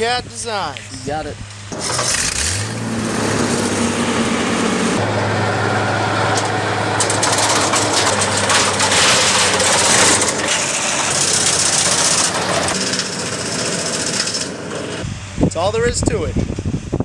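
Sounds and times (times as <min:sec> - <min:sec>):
wood chipper engine running: 0:01.6 - 0:15.4
crunching and rattling of chipping: 0:01.7 - 0:03.8, 0:06.2 - 0:15.0.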